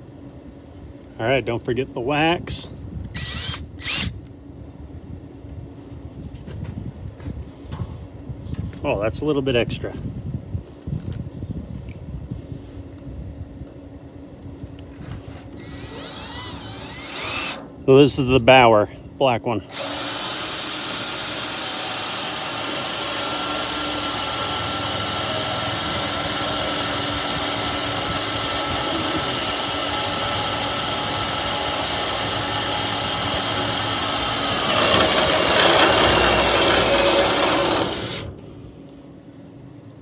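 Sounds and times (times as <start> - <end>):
power drill cutting metal: 3.2 - 4.1, 15.6 - 17.6, 19.7 - 38.4.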